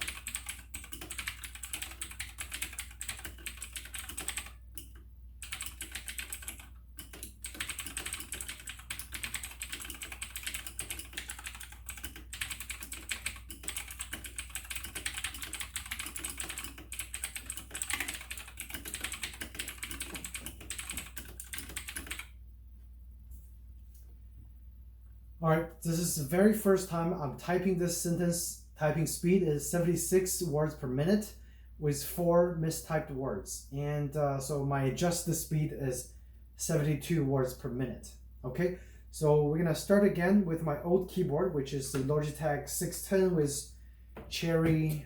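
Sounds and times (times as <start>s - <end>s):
mechanical keyboard typing: 0.0s - 22.3s.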